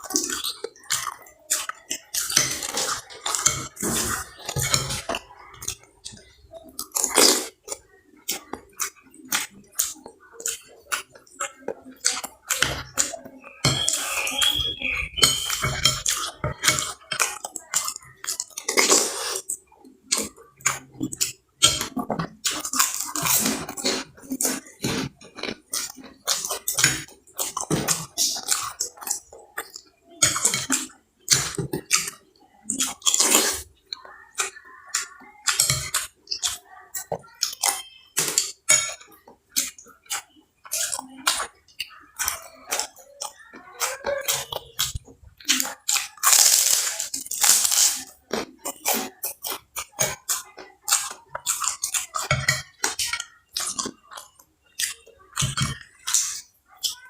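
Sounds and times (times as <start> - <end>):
crunching and chewing: 0.0 - 57.0
slurping: 0.0 - 57.0.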